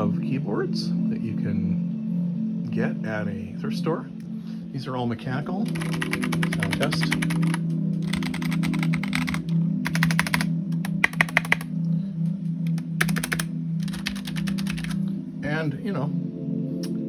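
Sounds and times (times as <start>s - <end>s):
mechanical keyboard typing: 5.7s - 11.8s, 12.7s - 15.0s.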